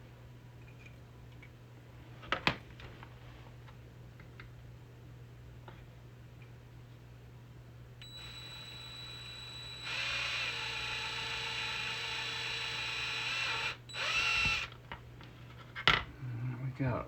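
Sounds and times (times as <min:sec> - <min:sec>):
drill bit cutting plastic: 0:08.0 - 0:14.7
power drill whining: 0:08.0 - 0:14.8.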